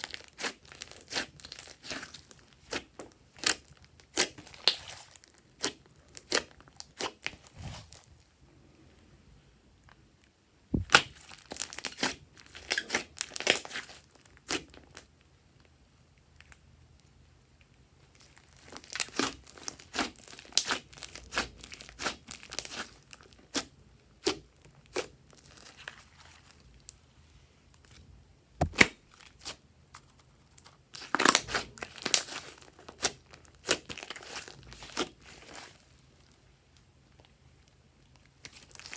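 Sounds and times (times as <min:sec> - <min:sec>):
sticky slime popping and crackling: 0:28.6 - 0:28.9.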